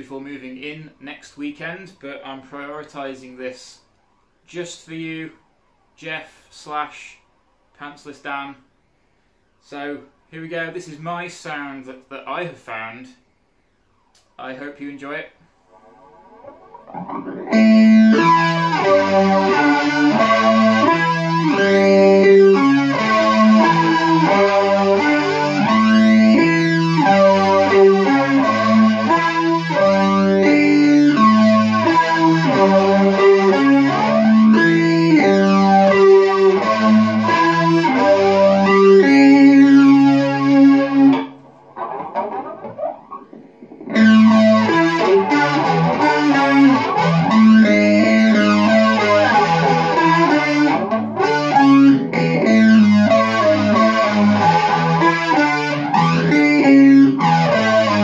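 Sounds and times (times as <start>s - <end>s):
electric guitar with sweeping effect: 15.6s - 58.0s.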